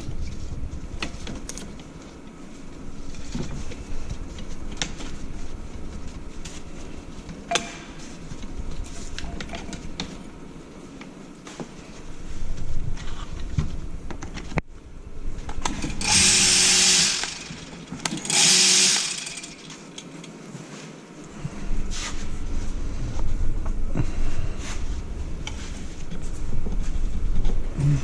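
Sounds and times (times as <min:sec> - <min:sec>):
small power tool hissing: 0:16.0 - 0:19.7.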